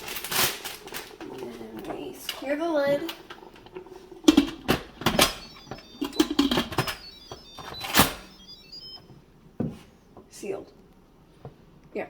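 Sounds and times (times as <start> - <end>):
electronic chime tones: 5.0 - 9.0.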